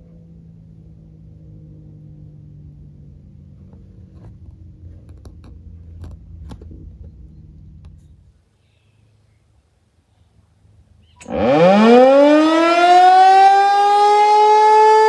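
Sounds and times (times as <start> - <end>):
low rumble: 0.0 - 8.4
warning siren winding down: 11.2 - 15.0.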